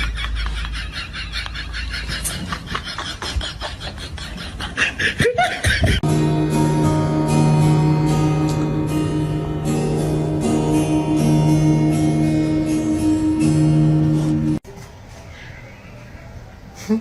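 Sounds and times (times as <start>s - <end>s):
bursts of laughter: 0.0s - 6.1s
background music sustained notes: 6.0s - 14.6s.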